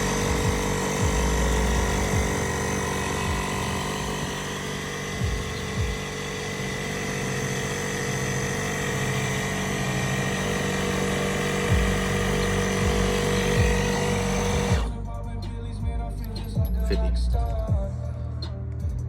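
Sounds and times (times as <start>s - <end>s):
electric tyre inflator running: 0.0s - 15.0s.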